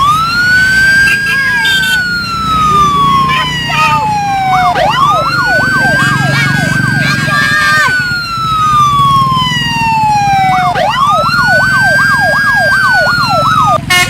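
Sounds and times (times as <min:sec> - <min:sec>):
fast warbling wail: 0:00.0 - 0:13.7
bus engine rumble: 0:00.0 - 0:14.0
bus horn swooping tone: 0:01.0 - 0:04.0.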